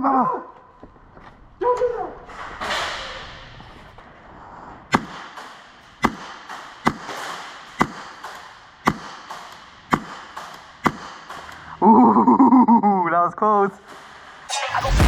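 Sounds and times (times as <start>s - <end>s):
airsoft gun shots: 4.9s - 11.6s.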